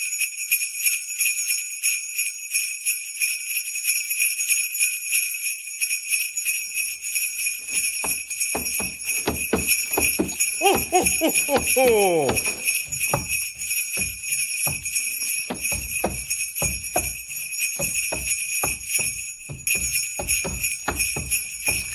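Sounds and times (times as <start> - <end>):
sleigh bells jingling: 0.0 - 21.9
low heavy thuds: 7.6 - 21.9.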